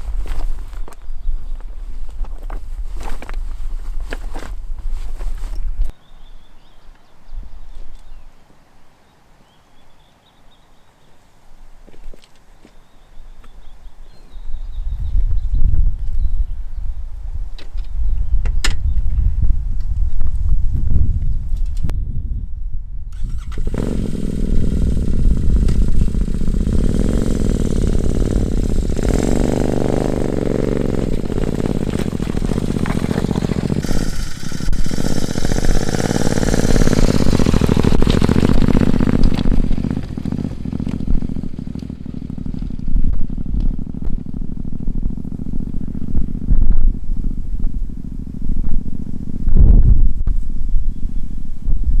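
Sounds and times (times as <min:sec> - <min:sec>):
motorcycle engine revving: 0:00.0 - 0:05.6, 0:23.1 - 0:49.8
wind rumble on microphone: 0:00.0 - 0:06.0, 0:14.0 - 0:52.0.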